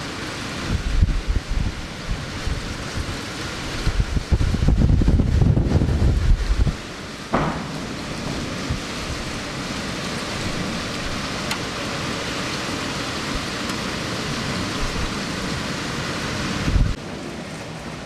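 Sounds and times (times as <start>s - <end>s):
heavy rain pouring: 0.0s - 18.0s
low rush: 7.3s - 13.6s.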